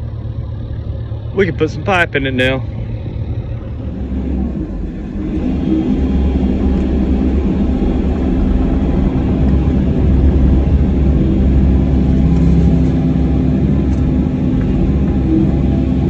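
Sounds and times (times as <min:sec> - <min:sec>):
diesel engine droning: 0:00.0 - 0:16.0.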